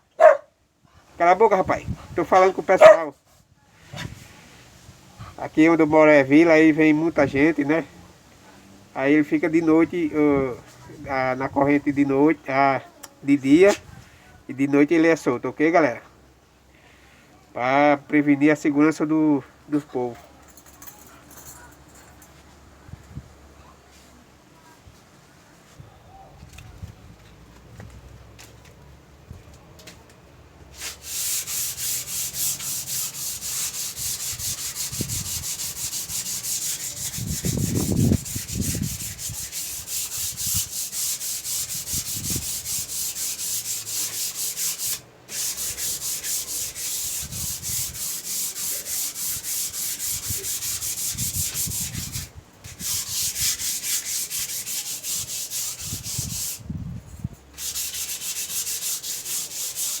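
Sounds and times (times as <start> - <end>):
sandpaper rubbing on wood: 30.7 - 56.6, 57.6 - 60.0.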